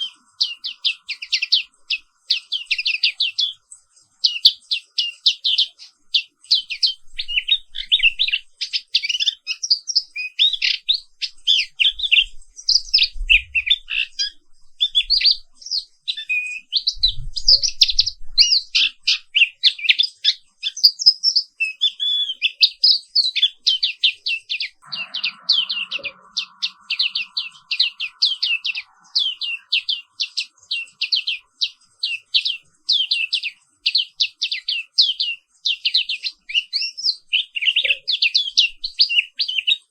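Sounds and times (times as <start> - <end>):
bird singing high chirps: 0.0 - 39.9.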